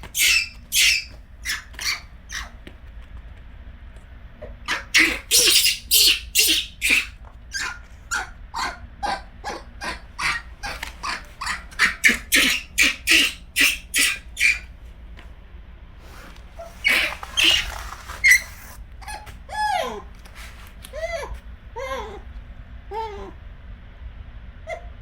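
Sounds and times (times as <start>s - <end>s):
monkey squeaky calls: 0.0s - 2.5s, 4.7s - 14.7s, 16.6s - 20.0s.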